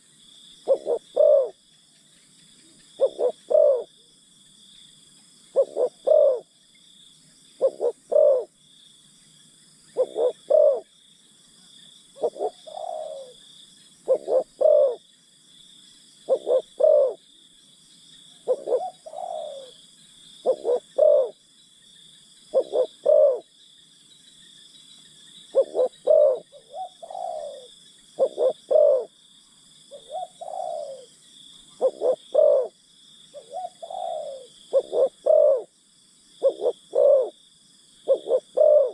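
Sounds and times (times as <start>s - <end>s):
insects droning: 0.0s - 38.9s
doves cooing: 0.6s - 1.6s, 2.9s - 4.0s, 5.5s - 6.5s, 7.6s - 8.5s, 10.0s - 10.9s, 12.2s - 13.4s, 14.0s - 15.0s, 16.3s - 17.2s, 18.4s - 19.8s, 20.4s - 21.4s, 22.5s - 23.5s, 25.5s - 29.1s, 29.9s - 32.8s, 33.4s - 35.7s, 36.4s - 37.4s, 38.1s - 38.9s.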